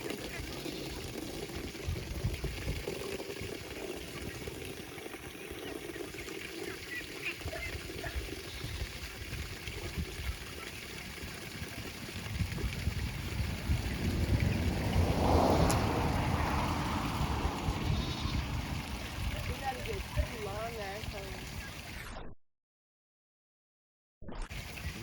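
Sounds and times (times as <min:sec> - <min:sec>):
wind rumble on microphone: 0:01.6 - 0:04.6, 0:07.4 - 0:21.9
poultry calling: 0:17.8 - 0:19.1.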